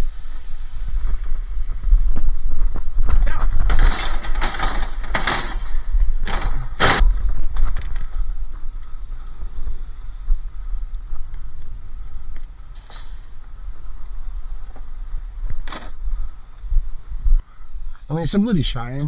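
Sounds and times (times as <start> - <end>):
steady low rumble: 0.0 - 18.0
scrap scraping and clattering: 2.7 - 17.4.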